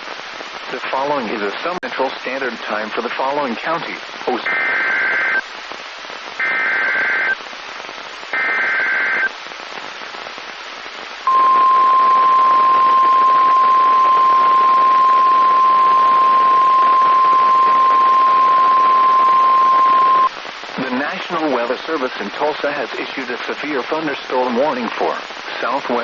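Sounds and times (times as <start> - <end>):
receiver static: 0.0 - 26.0
digital data bursts: 4.4 - 5.5, 6.4 - 7.4, 8.3 - 9.3, 11.3 - 21.6
steady warning alarm tone: 11.3 - 20.3.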